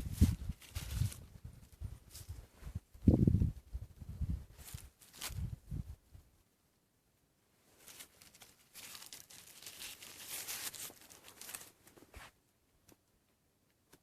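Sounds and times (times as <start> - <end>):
crinkling rustling handling noise: 0.0 - 1.4, 4.6 - 5.6, 7.6 - 12.4.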